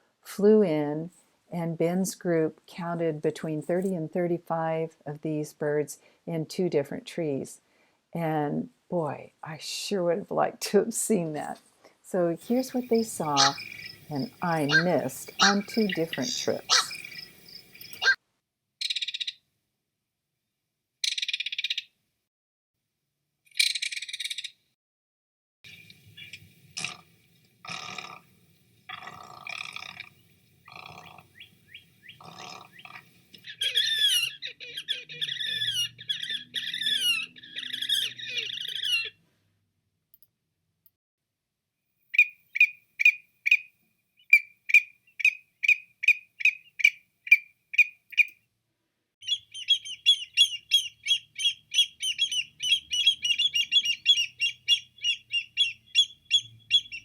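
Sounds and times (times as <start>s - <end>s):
bird chirps: 12.4s - 18.2s, 25.7s - 26.5s, 28.9s - 39.2s, 42.1s - 48.4s, 49.2s - 57.0s
low croaky bird calls: 12.4s - 18.2s, 25.7s - 39.2s, 49.2s - 57.0s
warbling birdsong: 12.4s - 18.2s, 25.7s - 39.2s, 42.1s - 48.4s, 49.2s - 57.0s
fast high bird trill: 12.5s - 18.2s, 30.0s - 39.1s, 49.2s - 57.0s.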